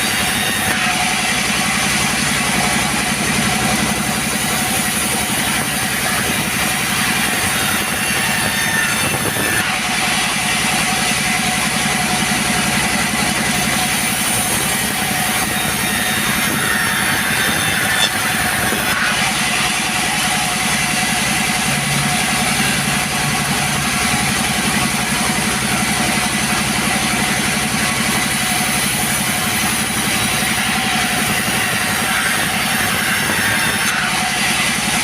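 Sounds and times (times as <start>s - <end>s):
chainsaw running at high revs: 0.0s - 35.0s.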